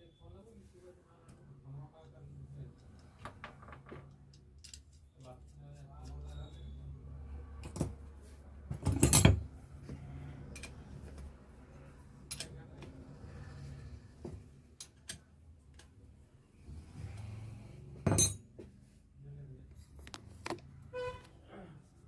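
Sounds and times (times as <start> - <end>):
metal parts clinking and clattering: 8.8 - 9.4, 18.1 - 18.4.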